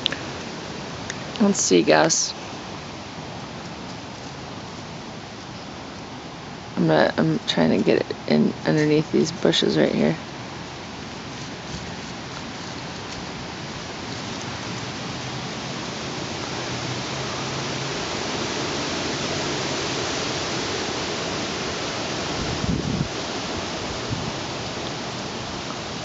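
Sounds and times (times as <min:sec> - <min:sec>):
wind gusting: 0:06.1 - 0:26.0
wind buffeting microphone: 0:21.8 - 0:25.6.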